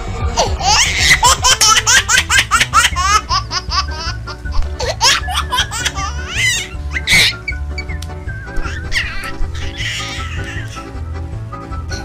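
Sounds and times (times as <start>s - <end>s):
background music with low beat: 0.0s - 12.0s
high-pitched laughter: 0.4s - 7.6s.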